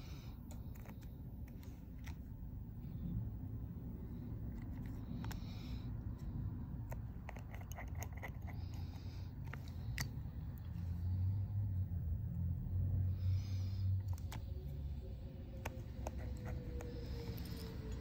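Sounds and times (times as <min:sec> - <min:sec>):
tools clicking and tapping: 0:06.9 - 0:10.1.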